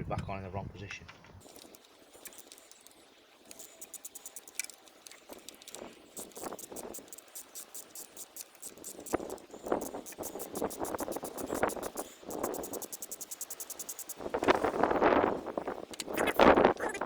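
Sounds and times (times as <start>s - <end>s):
ratchet spanner clicking: 1.4s - 14.5s.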